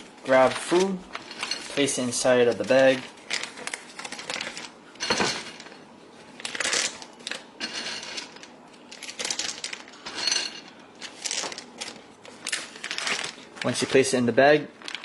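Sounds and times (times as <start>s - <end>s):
plastic bag crinkling: 0.3s - 4.7s, 11.0s - 14.0s, 14.7s - 15.0s.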